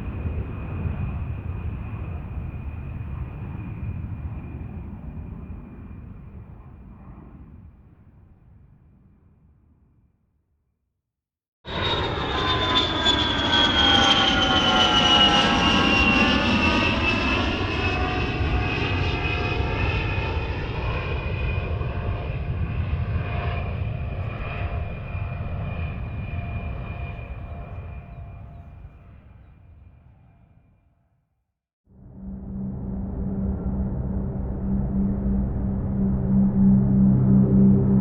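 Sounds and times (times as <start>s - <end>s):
airplane engine rumble: 0.0s - 7.6s, 11.7s - 29.5s, 31.9s - 38.0s
high whine falling in pitch: 32.0s - 38.0s.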